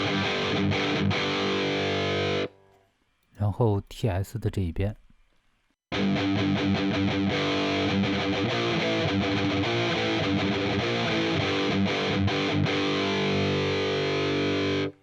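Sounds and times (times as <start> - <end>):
distorted electric guitar riff: 0.0 - 2.6, 5.9 - 15.0.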